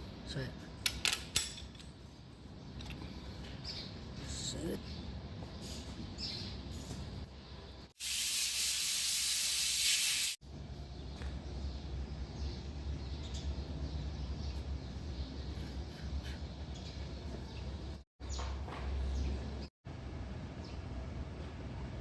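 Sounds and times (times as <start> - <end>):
steady hiss: 8.0 - 10.4.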